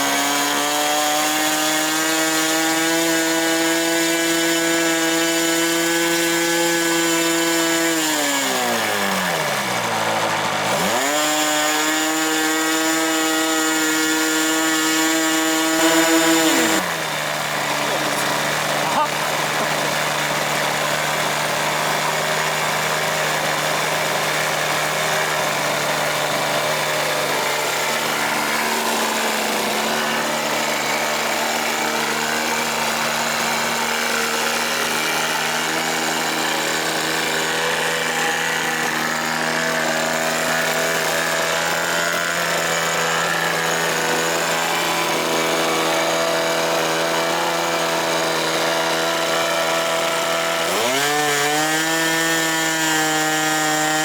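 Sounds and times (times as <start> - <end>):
model airplane engine running: 15.4 - 22.6, 26.0 - 50.6.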